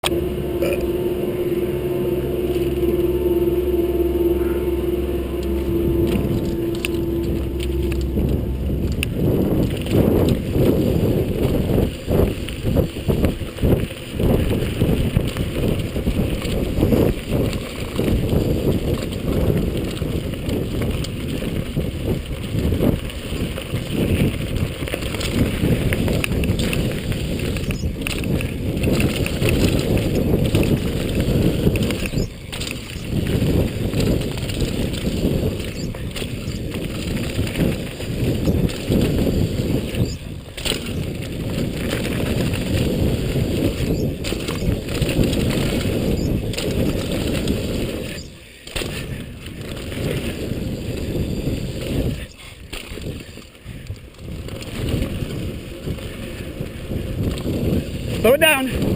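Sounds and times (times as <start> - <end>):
low wind rumble on microphone: 0.0 - 58.9
mountain bike rattling over bumps: 5.4 - 58.9.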